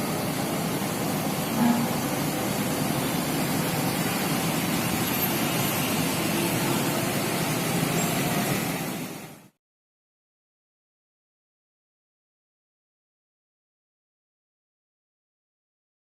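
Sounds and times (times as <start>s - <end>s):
vehicle engine noise: 0.0s - 9.6s.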